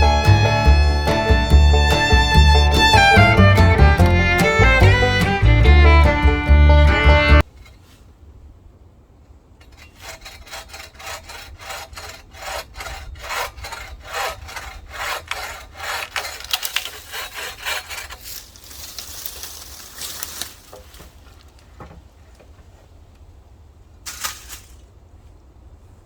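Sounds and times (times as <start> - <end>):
hand saw cutting wood: 0.0 - 7.8, 9.6 - 19.7.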